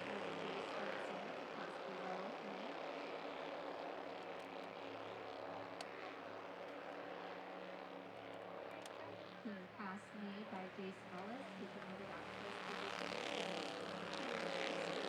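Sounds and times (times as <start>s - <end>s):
race car engines droning: 6.6s - 15.0s.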